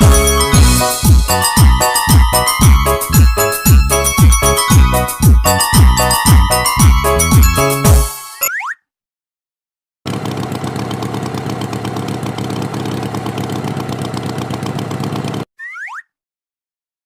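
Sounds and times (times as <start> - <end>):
engine idling: 10.1 - 15.4.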